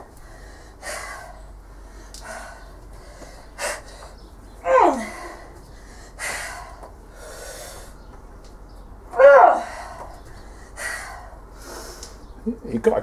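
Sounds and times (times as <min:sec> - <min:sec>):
person breathing hard: 0:00.0 - 0:04.3, 0:05.0 - 0:08.0, 0:09.6 - 0:12.2.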